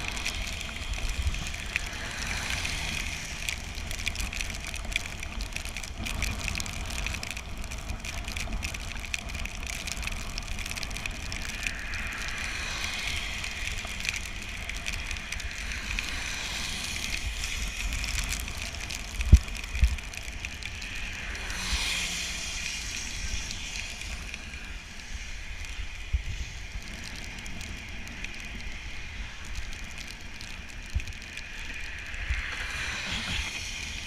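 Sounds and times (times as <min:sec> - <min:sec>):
rain: 0:00.0 - 0:34.0
wind rumbling on microphone: 0:00.0 - 0:34.0
tyre spray hiss: 0:31.8 - 0:34.0.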